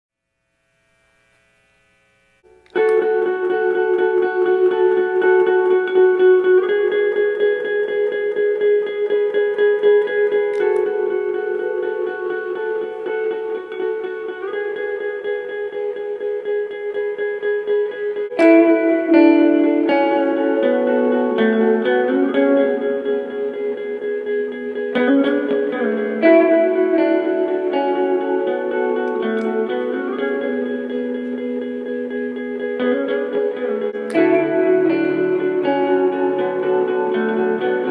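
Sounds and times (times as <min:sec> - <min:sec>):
faint hum: 0:00.2 - 0:06.6
electric guitar with effects: 0:00.8 - 0:37.9.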